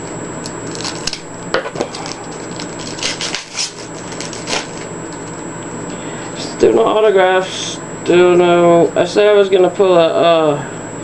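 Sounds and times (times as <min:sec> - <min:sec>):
card clicks and rustles: 0:00.6 - 0:05.4
trading cards flipped: 0:00.7 - 0:05.4.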